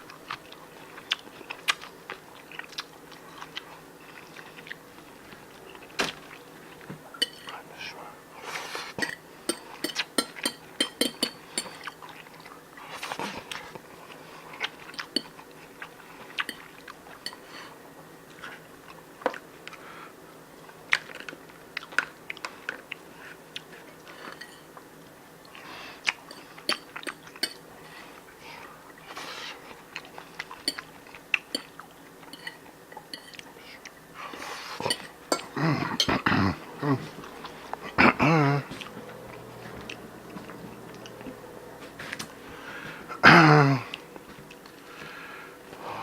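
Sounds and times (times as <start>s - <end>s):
chewing: 0.0s - 19.9s, 20.6s - 43.0s
cutlery clinking on dishes: 7.2s - 7.6s, 8.9s - 12.0s, 24.2s - 24.7s, 26.3s - 27.6s, 30.6s - 30.9s, 31.5s - 33.4s, 34.8s - 36.2s.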